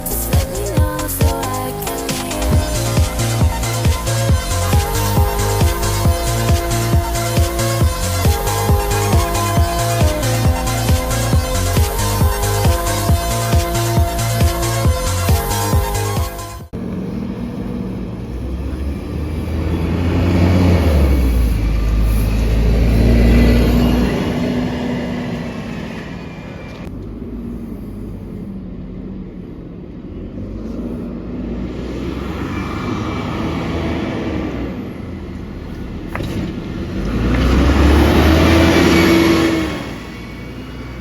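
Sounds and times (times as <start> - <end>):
bus diesel engine pulling: 0.0 - 41.0.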